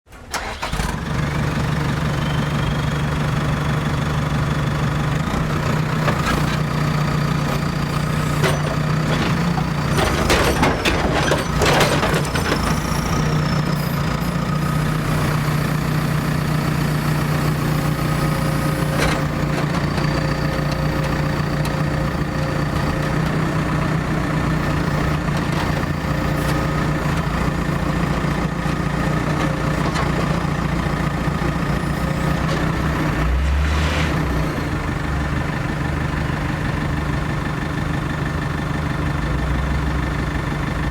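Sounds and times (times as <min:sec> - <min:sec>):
construction machine engine idling: 0:00.1 - 0:33.4, 0:34.4 - 0:40.9
metal clanks and knocks: 0:08.2 - 0:12.8.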